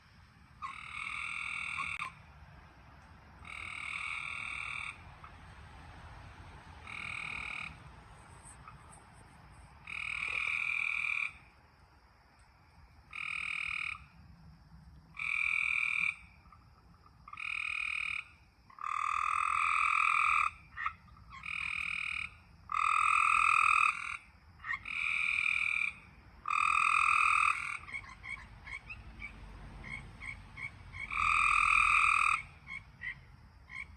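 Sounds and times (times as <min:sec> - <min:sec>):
frog trilling call: 0:00.6 - 0:02.2, 0:03.4 - 0:05.4, 0:06.8 - 0:07.8, 0:09.8 - 0:11.5, 0:13.1 - 0:14.2, 0:15.1 - 0:16.6, 0:17.2 - 0:33.9.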